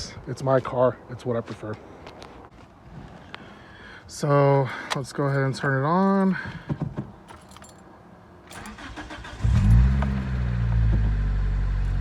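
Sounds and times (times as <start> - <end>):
car engine cranking and idling: 8.5 - 12.0.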